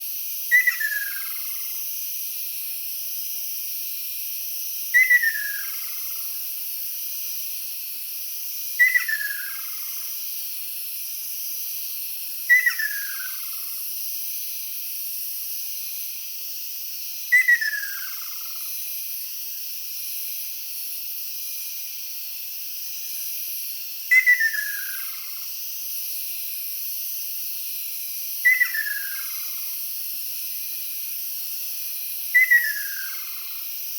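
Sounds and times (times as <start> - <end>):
steady high hiss: 0.0 - 33.9.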